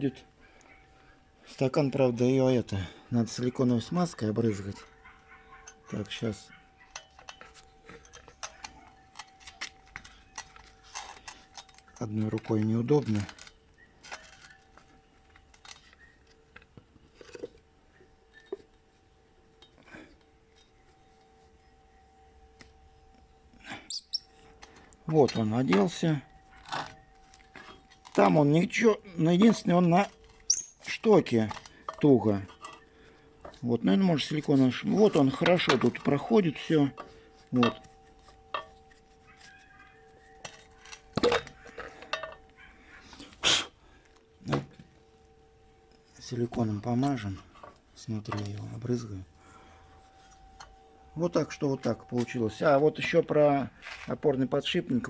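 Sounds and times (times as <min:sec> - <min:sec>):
faint steady hum: 0:00.0 - 0:55.0
metal parts clicking and knocking: 0:05.6 - 0:17.7, 0:23.9 - 0:42.6, 0:45.9 - 0:49.2.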